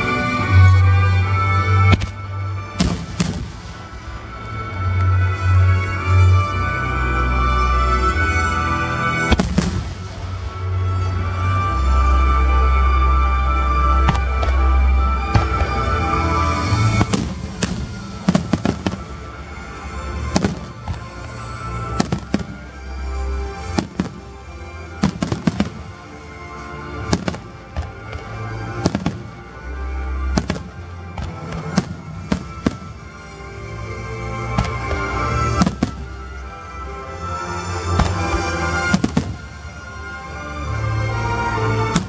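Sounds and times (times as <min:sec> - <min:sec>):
fireworks bangs: 0:02.8 - 0:03.9, 0:09.3 - 0:10.3, 0:16.6 - 0:22.9, 0:23.6 - 0:26.0, 0:27.0 - 0:29.5, 0:30.3 - 0:33.3, 0:34.5 - 0:36.2, 0:37.9 - 0:39.6.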